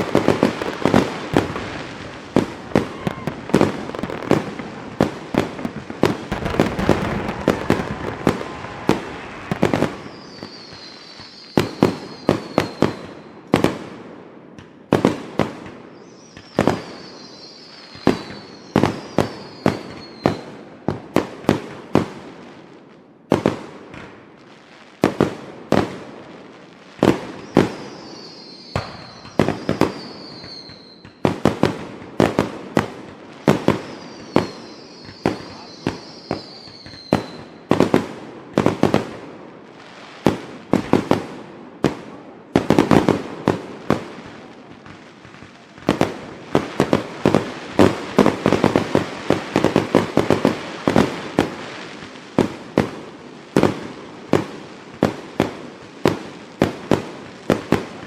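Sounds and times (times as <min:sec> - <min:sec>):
falling firework whistle: 0:00.0 - 0:13.5, 0:15.9 - 0:20.5, 0:27.2 - 0:31.4, 0:33.5 - 0:37.9
fireworks bangs and crackles: 0:00.0 - 0:58.0.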